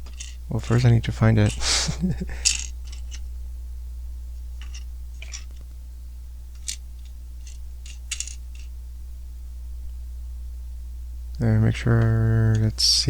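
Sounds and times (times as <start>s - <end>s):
plastic pieces clicking and clattering: 0.0s - 1.6s, 2.3s - 3.2s, 4.6s - 5.6s, 6.5s - 8.7s
steady low hum: 0.0s - 13.0s.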